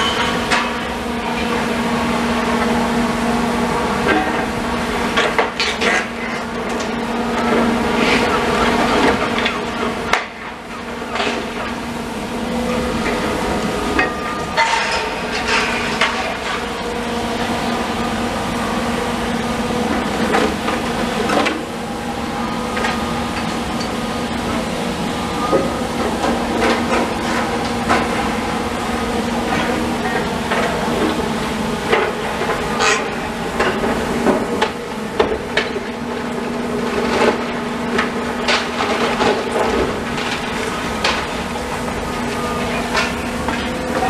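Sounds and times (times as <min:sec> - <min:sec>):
demolition machinery running: 0:00.0 - 0:44.0
debris clanking and knocking: 0:14.0 - 0:16.7.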